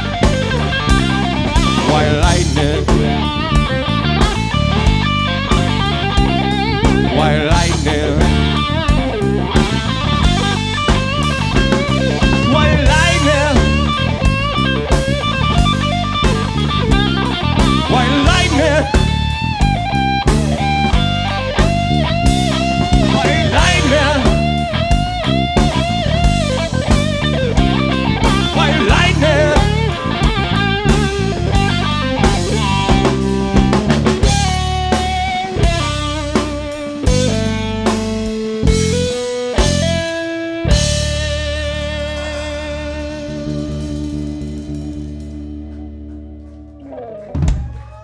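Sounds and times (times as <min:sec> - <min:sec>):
bending guitar lead: 0:00.0 - 0:48.0
blues-rock band playing: 0:00.0 - 0:48.0.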